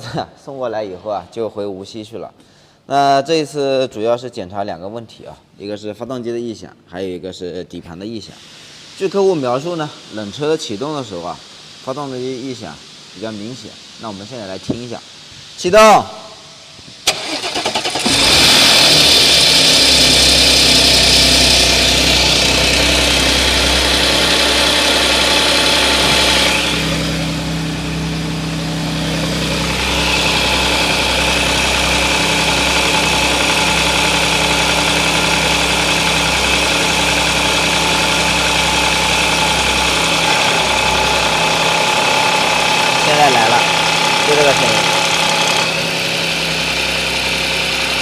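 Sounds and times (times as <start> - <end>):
car starter engaging: 17.0 - 20.3
car engine idling: 17.1 - 48.0.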